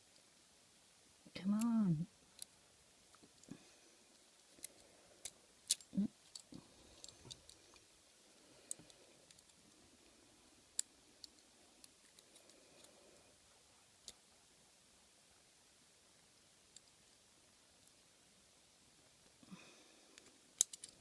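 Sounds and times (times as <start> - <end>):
lock pick clicking and scraping: 4.6 - 7.6, 20.6 - 21.0.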